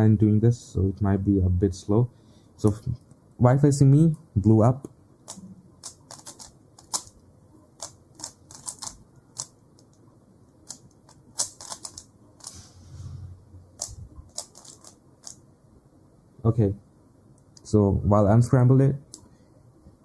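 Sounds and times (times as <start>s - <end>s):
rubik's cube turning clicks: 5.2s - 7.2s, 7.8s - 10.0s, 10.6s - 12.6s, 13.8s - 15.4s.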